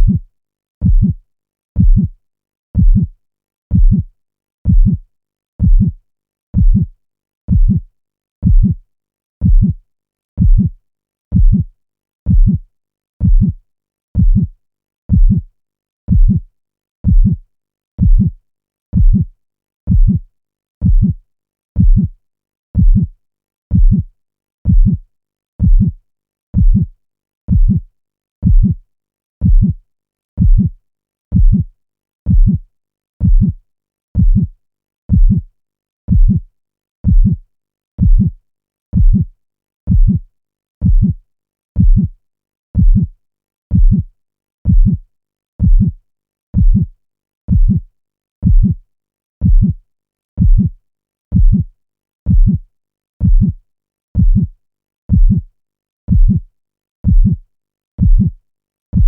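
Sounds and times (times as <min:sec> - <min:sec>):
heartbeat thumps: 0:00.0 - 0:00.2, 0:00.8 - 0:01.2, 0:01.8 - 0:02.1, 0:02.8 - 0:03.1, 0:03.7 - 0:04.1, 0:04.7 - 0:05.0, 0:05.6 - 0:06.0, 0:06.6 - 0:06.9, 0:07.5 - 0:07.8, 0:08.4 - 0:08.8, 0:09.4 - 0:09.8, 0:10.4 - 0:10.7, 0:11.3 - 0:11.7, 0:12.3 - 0:12.6, 0:13.2 - 0:13.6, 0:14.2 - 0:14.5, 0:15.1 - 0:15.4, 0:16.1 - 0:16.4, 0:17.0 - 0:17.4, 0:18.0 - 0:18.3, 0:19.0 - 0:19.2, 0:19.9 - 0:20.2, 0:20.8 - 0:21.2, 0:21.8 - 0:22.1, 0:22.8 - 0:23.1, 0:23.7 - 0:24.1, 0:24.7 - 0:25.0, 0:25.6 - 0:26.0, 0:26.6 - 0:26.9, 0:27.5 - 0:27.8, 0:28.4 - 0:28.8, 0:29.4 - 0:29.8, 0:30.4 - 0:30.7, 0:31.3 - 0:31.6, 0:32.3 - 0:32.6, 0:33.2 - 0:33.6, 0:34.2 - 0:34.5, 0:35.1 - 0:35.4, 0:36.1 - 0:36.4, 0:37.0 - 0:37.4, 0:38.0 - 0:38.3, 0:39.0 - 0:39.2, 0:39.9 - 0:40.2, 0:40.8 - 0:41.1, 0:41.8 - 0:42.1, 0:42.8 - 0:43.1, 0:43.7 - 0:44.0, 0:44.7 - 0:45.0, 0:45.6 - 0:46.0, 0:46.6 - 0:46.8, 0:47.5 - 0:47.8, 0:48.4 - 0:48.8, 0:49.4 - 0:49.7, 0:50.4 - 0:50.7, 0:51.3 - 0:51.6, 0:52.3 - 0:52.6, 0:53.2 - 0:53.6, 0:54.2 - 0:54.4, 0:55.1 - 0:55.4, 0:56.1 - 0:56.4, 0:57.0 - 0:57.4, 0:58.0 - 0:58.3.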